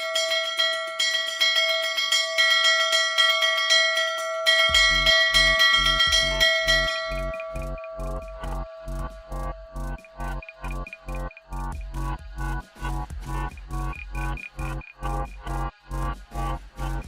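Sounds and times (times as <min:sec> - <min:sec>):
bell-like chimes ringing: 0:00.0 - 0:11.8
deep pulsing beat: 0:04.7 - 0:17.0.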